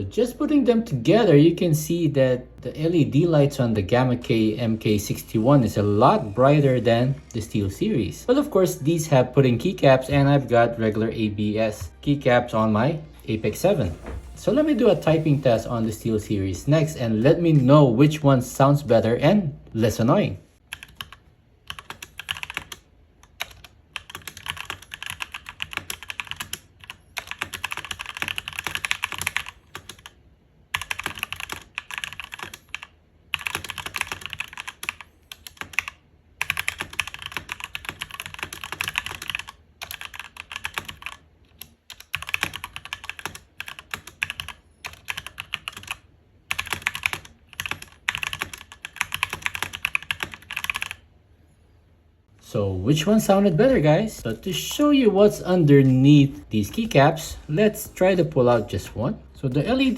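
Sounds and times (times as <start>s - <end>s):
fast typing on mechanical keyboard: 20.7s - 51.0s.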